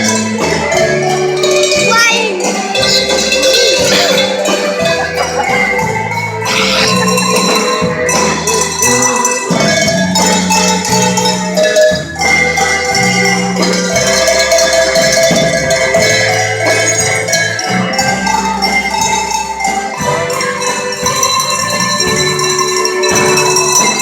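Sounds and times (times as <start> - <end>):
bass line: 0.0 - 18.1
bell-like percussion: 0.0 - 24.0.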